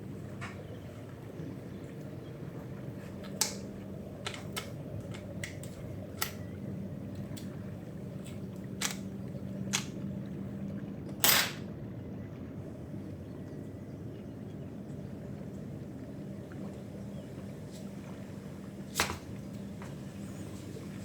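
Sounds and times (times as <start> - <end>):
steady low hum: 0.0 - 21.0
sharp clicks and snaps: 3.3 - 6.4.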